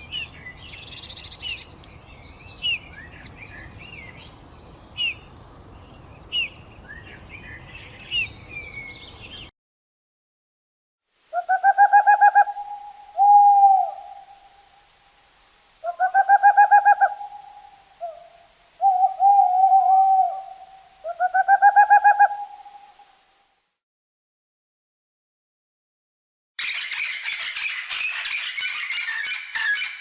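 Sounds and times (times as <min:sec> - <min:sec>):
bird hooting: 0:11.3 - 0:14.6, 0:15.8 - 0:23.2.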